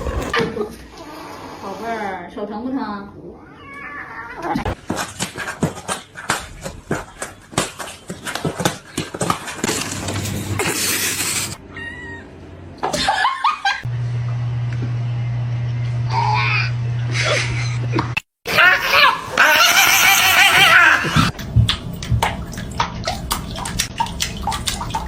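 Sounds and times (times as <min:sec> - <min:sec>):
cat crying: 0:03.4 - 0:04.6, 0:11.6 - 0:12.4, 0:18.5 - 0:21.3
rapid laughter: 0:18.5 - 0:21.3.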